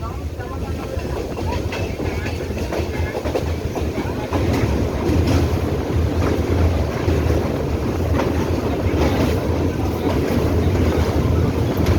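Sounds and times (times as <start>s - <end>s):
train rumbling on track: 0.0s - 11.9s
wheels clicking over rail joints: 0.8s - 11.9s.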